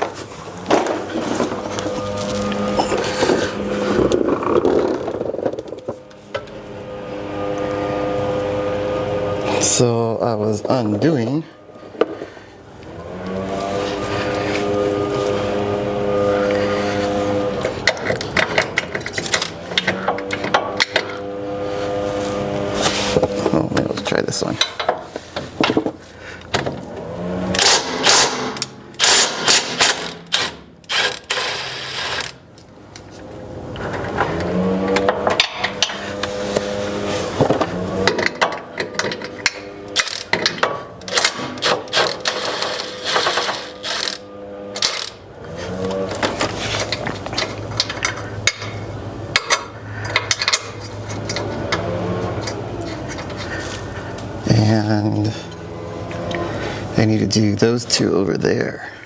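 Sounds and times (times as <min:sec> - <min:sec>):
steady hum: 0:00.0 - 0:59.0.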